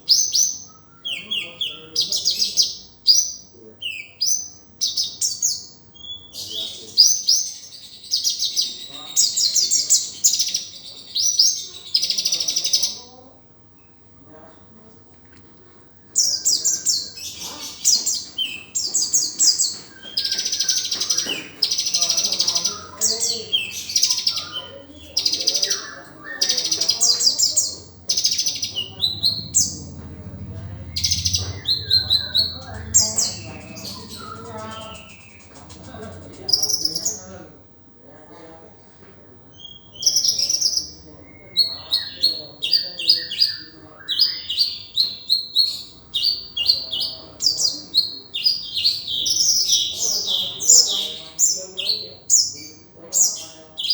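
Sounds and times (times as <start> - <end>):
sunbird singing chirps and trills: 0.0 - 13.2, 16.1 - 37.4, 39.5 - 53.9
low hum: 27.7 - 36.5.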